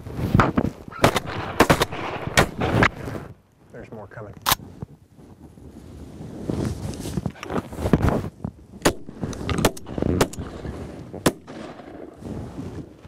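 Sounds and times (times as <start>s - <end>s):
shotgun shots: 1.0s - 3.0s, 8.8s - 12.2s.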